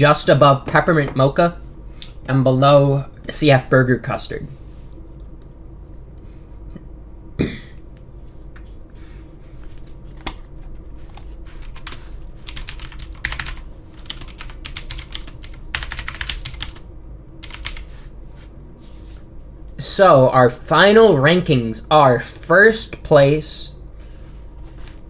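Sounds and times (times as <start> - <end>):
typing on computer keyboard: 11.7 - 16.8, 17.4 - 17.8.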